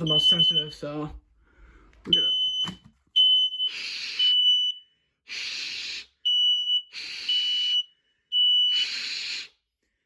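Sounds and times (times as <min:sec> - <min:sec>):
smoke alarm beeping: 0:00.0 - 0:01.1, 0:02.1 - 0:05.0, 0:06.2 - 0:09.0.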